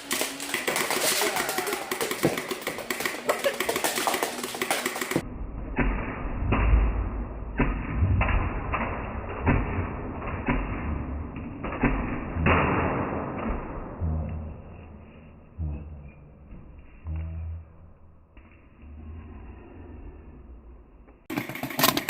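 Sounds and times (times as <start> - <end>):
foam balls knocking over tiles: 0.0 - 5.2
low rumble: 5.2 - 21.3.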